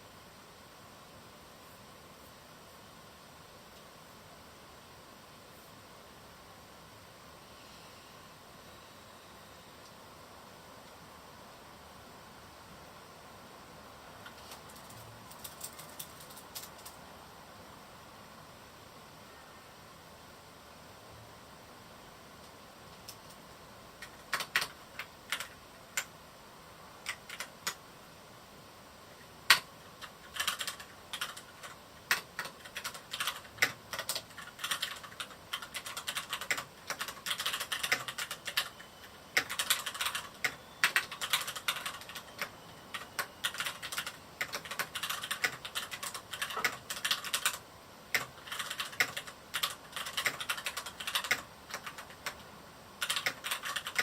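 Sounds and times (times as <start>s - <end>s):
typing on mechanical keyboard: 14.2s - 17.0s, 24.0s - 26.1s, 27.0s - 27.8s, 29.5s - 54.0s.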